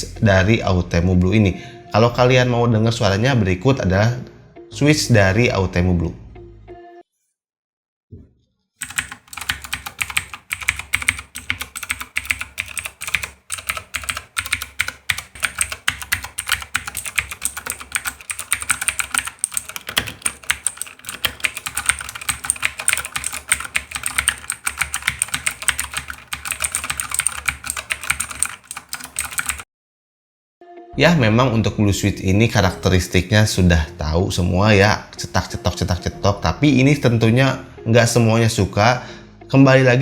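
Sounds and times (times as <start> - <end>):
fast clicky keyboard typing: 8.8 - 29.6.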